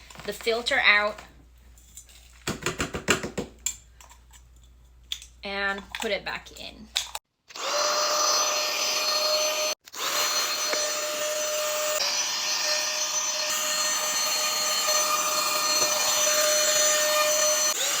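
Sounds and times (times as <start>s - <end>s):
handheld vacuum cleaner running: 7.5s - 18.0s.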